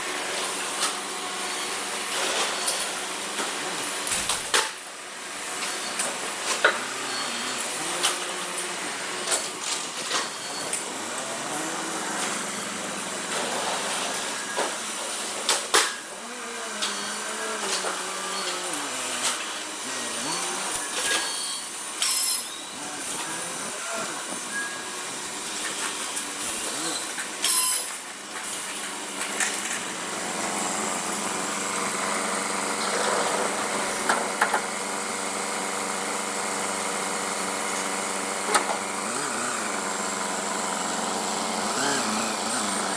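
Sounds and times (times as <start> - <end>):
machinery running: 5.1 - 27.2.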